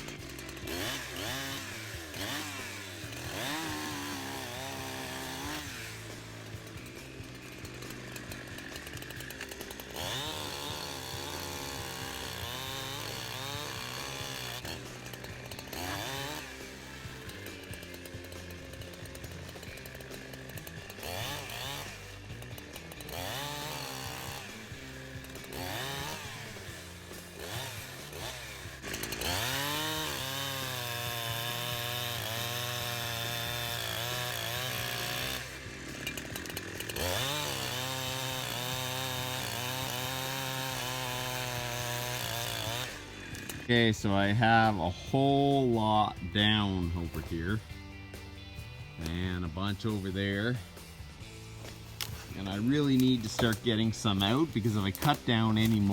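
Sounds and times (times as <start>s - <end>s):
chainsaw revving while cutting wood: 0.0s - 55.9s.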